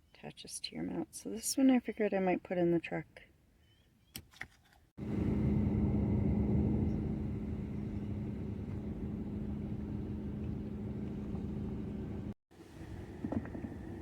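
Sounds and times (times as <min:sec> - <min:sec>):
vehicle engine rumbling: 0:05.0 - 0:14.0.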